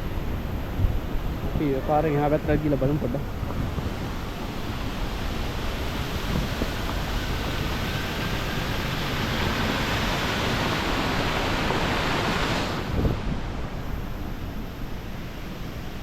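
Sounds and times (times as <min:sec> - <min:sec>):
wind buffeting microphone: 0:00.0 - 0:16.0
waterfall rushing: 0:01.6 - 0:14.4.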